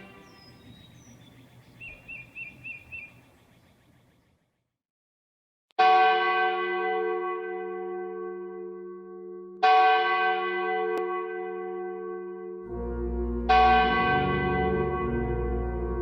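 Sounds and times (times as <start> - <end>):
large church bell ringing: 0.0 - 0.5, 5.8 - 16.0.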